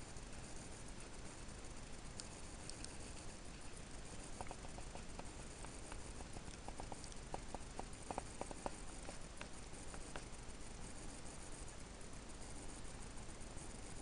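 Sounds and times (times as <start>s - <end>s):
steady low hiss: 0.0s - 14.0s
light tapping: 4.1s - 10.3s.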